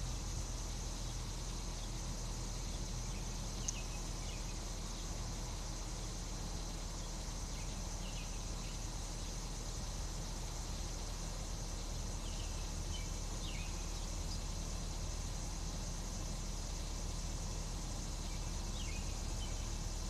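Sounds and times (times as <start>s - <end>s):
car engine idling: 0.0s - 20.0s
insects chirping: 0.0s - 20.0s
faint bird-like chirps: 0.9s - 5.3s, 6.5s - 9.6s, 11.7s - 14.9s, 18.1s - 20.0s.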